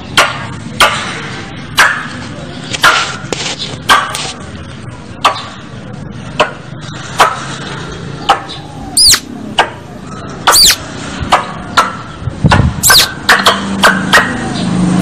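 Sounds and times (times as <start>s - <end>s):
squirrel chipping calls: 8.2s - 9.8s, 10.4s - 10.9s, 12.8s - 13.2s.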